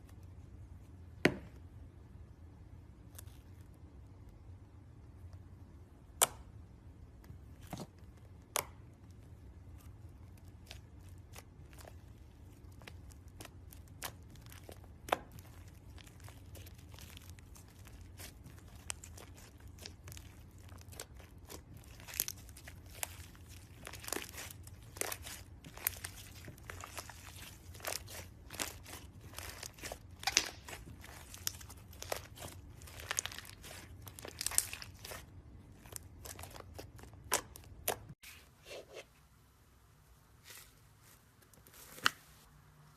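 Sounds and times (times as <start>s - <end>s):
slime popping and crackling: 9.8s - 38.2s.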